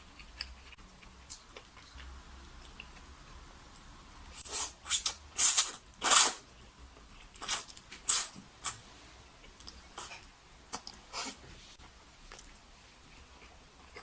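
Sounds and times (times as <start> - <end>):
person slurping and biting: 4.4 - 6.4.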